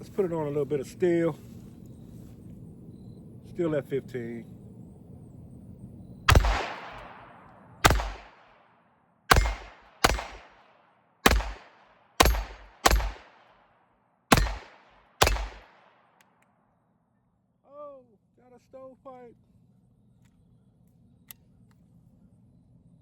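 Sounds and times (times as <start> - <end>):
pistol shots with short echo: 6.3 - 8.7, 9.3 - 13.7, 14.3 - 16.3.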